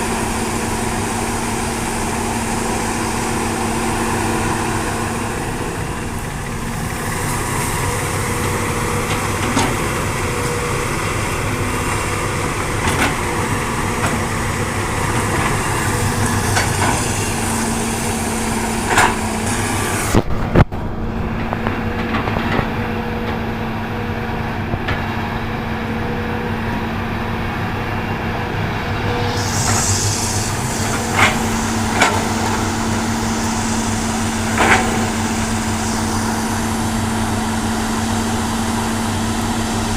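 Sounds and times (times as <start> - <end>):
excavator diesel engine running: 0.0 - 39.9
excavator knocks and clanks: 5.9 - 26.4, 30.5 - 35.8.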